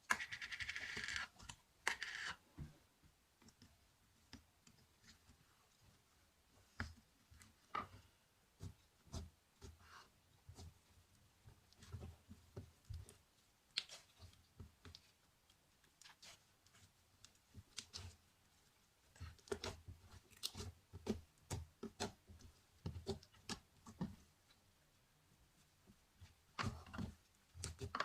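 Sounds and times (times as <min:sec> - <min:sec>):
slime squishing: 0:12.9 - 0:24.2.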